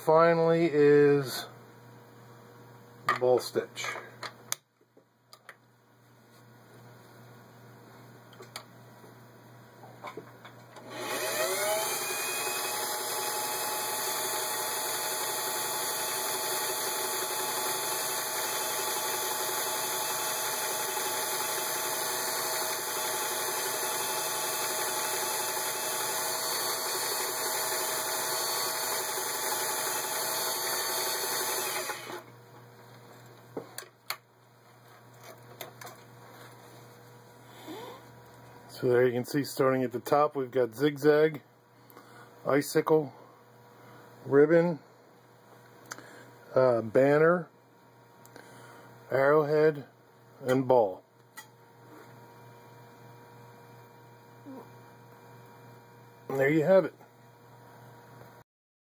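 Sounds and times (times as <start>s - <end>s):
sewing machine motor running: 10.8s - 32.3s.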